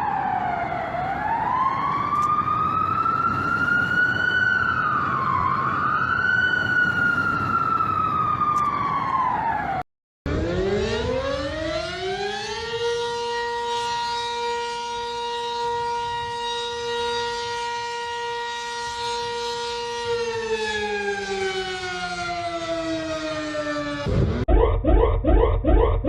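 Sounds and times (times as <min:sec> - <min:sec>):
civil defense siren winding: 0:00.0 - 0:26.0
warbling alarm: 0:10.3 - 0:26.0.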